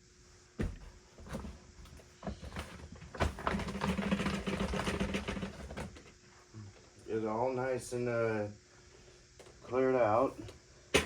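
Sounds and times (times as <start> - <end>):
debris rattling out of bin: 2.4 - 6.0.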